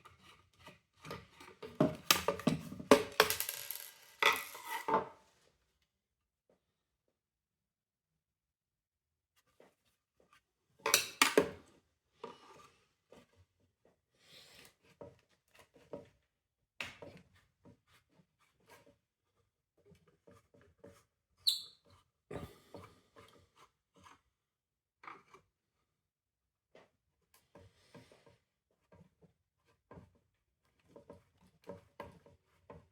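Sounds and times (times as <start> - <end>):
brief squeak: 21.4 - 21.9.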